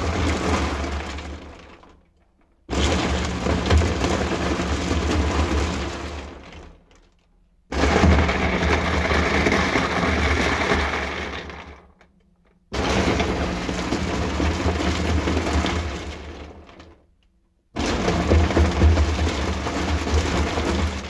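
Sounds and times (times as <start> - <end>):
washing machine churning: 0.0 - 1.9, 2.7 - 6.5, 12.8 - 16.8, 17.8 - 21.0.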